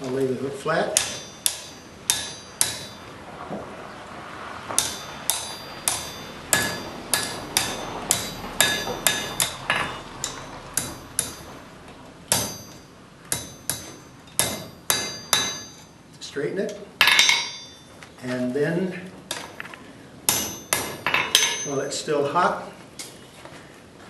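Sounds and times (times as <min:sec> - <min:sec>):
hammer striking metal on anvil: 0:00.9 - 0:03.1, 0:04.8 - 0:11.7, 0:12.3 - 0:16.0, 0:17.0 - 0:18.0, 0:19.3 - 0:19.6, 0:20.3 - 0:22.0.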